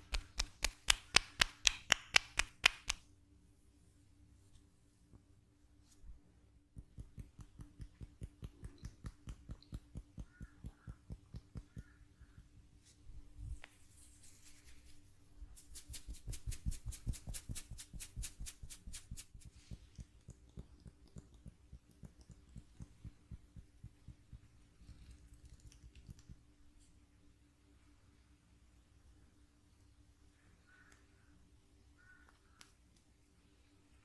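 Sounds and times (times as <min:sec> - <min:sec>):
hands patting on body: 0:00.0 - 0:03.0, 0:06.8 - 0:12.0, 0:15.6 - 0:24.6
faint steady hum: 0:00.0 - 0:34.0.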